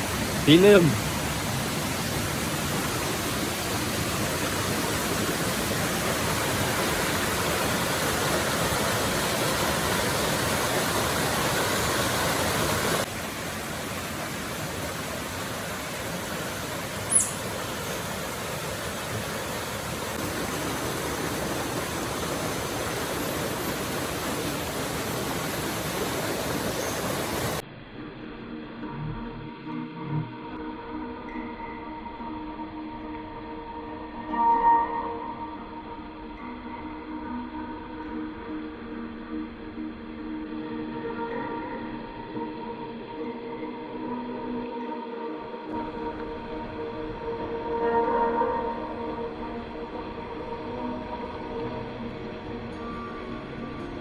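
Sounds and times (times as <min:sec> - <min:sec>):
water rushing: 0:00.0 - 0:27.6
high chirp: 0:17.0 - 0:18.4.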